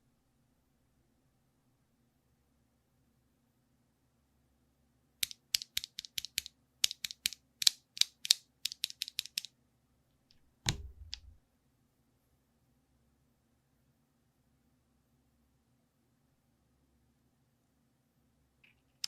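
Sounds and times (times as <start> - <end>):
mechanical keyboard typing: 5.2 - 9.5, 10.7 - 11.4
heavy keystroke thud: 10.7 - 11.4.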